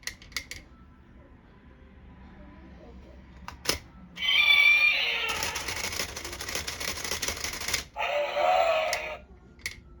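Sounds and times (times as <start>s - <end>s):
toy wavering electronic call: 4.2s - 6.0s.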